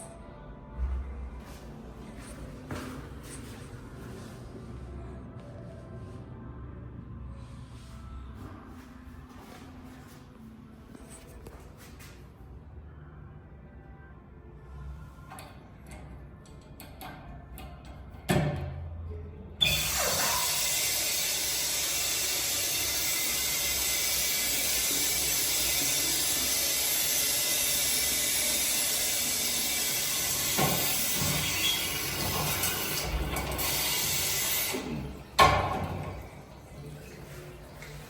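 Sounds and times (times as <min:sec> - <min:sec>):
toilet water rushing: 0:19.6 - 0:38.0.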